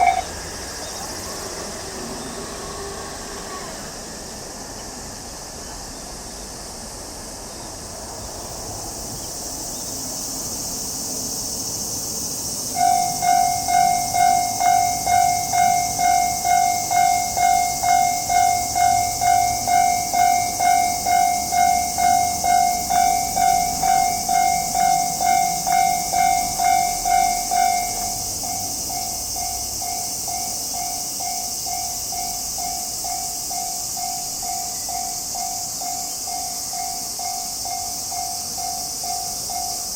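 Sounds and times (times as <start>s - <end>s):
level-crossing warning bell: 0.0s - 1.7s, 12.6s - 39.9s
steady high hiss: 0.0s - 39.9s.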